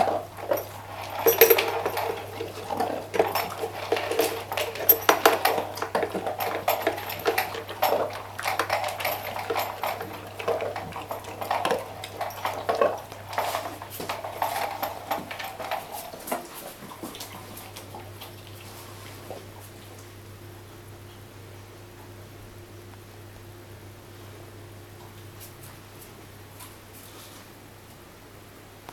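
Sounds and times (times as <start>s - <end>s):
bowl clattering: 0.0s - 16.5s
dog eating from a bowl: 0.0s - 20.2s.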